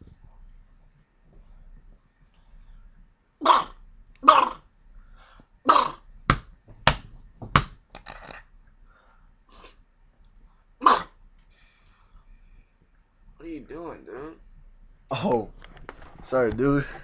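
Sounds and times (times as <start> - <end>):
man sneezing: 3.4 - 4.6, 5.7 - 6.0, 10.8 - 11.2.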